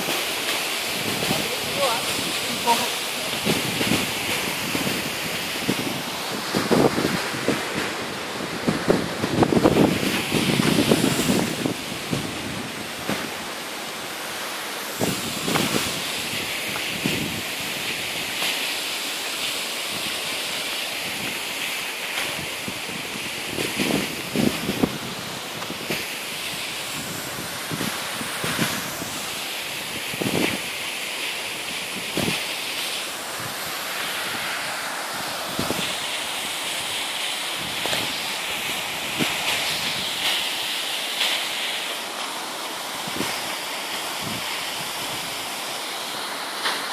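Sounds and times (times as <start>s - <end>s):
waterfall rushing: 0.0s - 46.9s
wind buffeting microphone: 0.9s - 13.5s, 14.9s - 18.4s, 22.3s - 30.7s, 31.7s - 32.5s, 33.2s - 37.0s, 44.2s - 45.4s.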